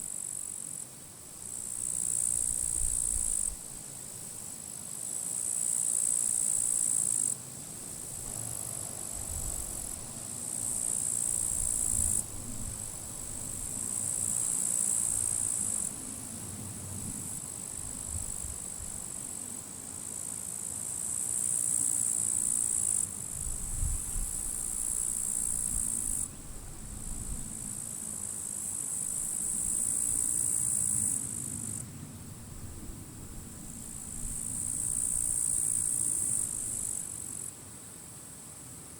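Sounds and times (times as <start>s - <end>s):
low rumble of gusting wind: 7.8s - 14.3s, 15.1s - 19.2s, 23.1s - 36.8s
grasshoppers buzzing chirrups: 33.7s - 37.5s.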